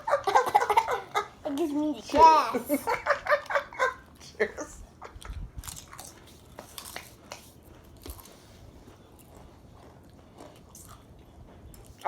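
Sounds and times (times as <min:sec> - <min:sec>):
crisps being bitten and chewed: 0:05.1 - 0:12.0.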